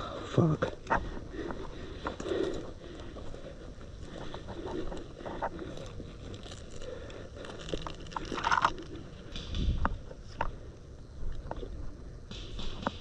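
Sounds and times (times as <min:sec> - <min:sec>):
footsteps crunching: 0:00.0 - 0:13.0
camera handling rumble: 0:00.8 - 0:10.6
gear rustling: 0:00.9 - 0:09.7.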